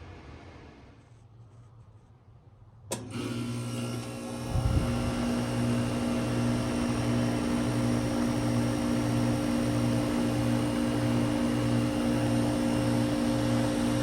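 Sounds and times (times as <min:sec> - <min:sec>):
heat pump compressor humming: 0:02.9 - 0:14.0.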